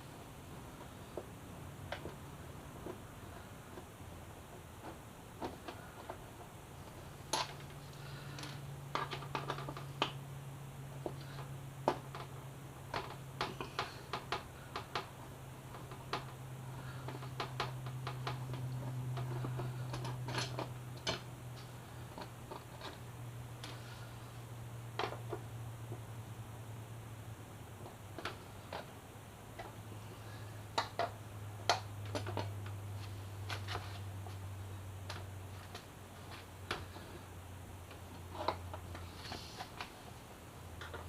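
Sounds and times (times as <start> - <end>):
steady low hum: 0.0 - 41.0
plastic fairing pieces clicking: 4.5 - 10.2, 11.0 - 23.0, 30.7 - 32.8
hand tools clicking and tapping: 11.0 - 23.0.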